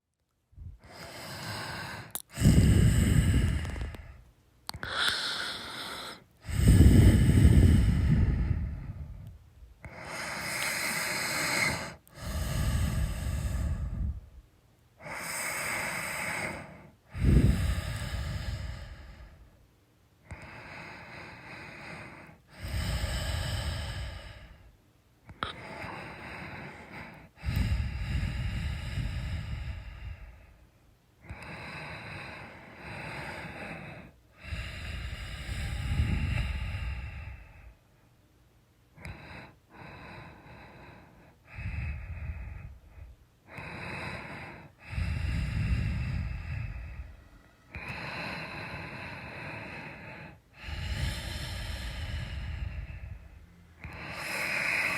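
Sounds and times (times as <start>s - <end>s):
person snoring: 0.8s - 14.2s, 15.0s - 19.4s, 32.5s - 37.6s, 43.5s - 54.9s.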